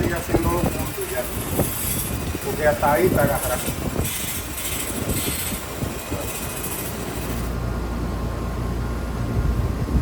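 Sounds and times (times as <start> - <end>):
welding arc crackle: 0.0 - 7.6
steady low hum: 0.0 - 10.0.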